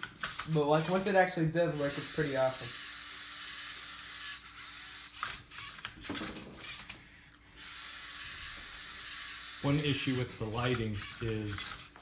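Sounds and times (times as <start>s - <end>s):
robot motors clicking and knocking: 0.0s - 1.2s, 1.8s - 12.0s.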